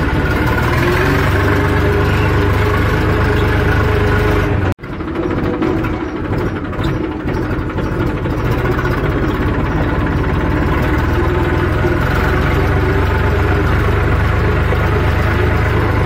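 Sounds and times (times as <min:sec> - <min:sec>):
tractor diesel engine running: 0:00.0 - 0:16.0.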